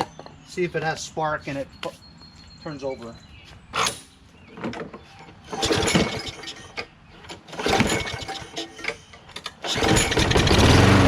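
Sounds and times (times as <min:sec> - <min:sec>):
lawn mower engine running: 0:05.5 - 0:11.0
recoil starter pulls: 0:05.5 - 0:11.0.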